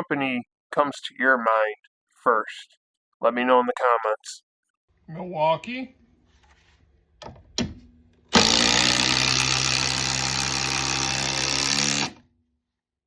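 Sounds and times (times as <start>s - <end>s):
impact driver rattling: 7.2s - 12.2s.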